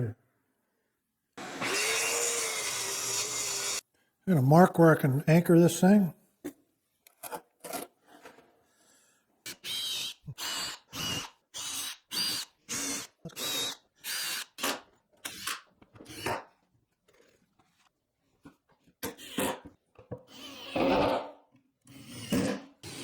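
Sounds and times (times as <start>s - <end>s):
power drill bursts: 1.4s - 3.8s.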